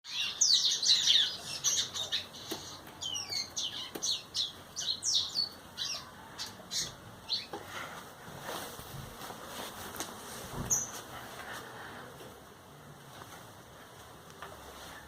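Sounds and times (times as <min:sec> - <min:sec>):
songbirds singing: 0:00.0 - 0:07.7, 0:10.6 - 0:11.1.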